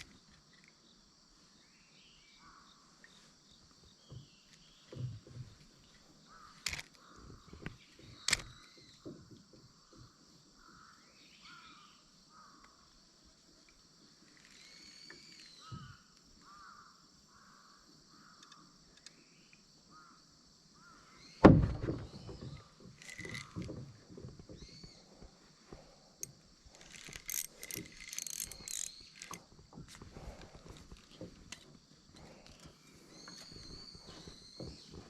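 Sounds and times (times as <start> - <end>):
rustling and knocking: 4.1 - 5.9, 21.4 - 25.9, 26.8 - 35.0
loud thump: 21.4 - 22.4.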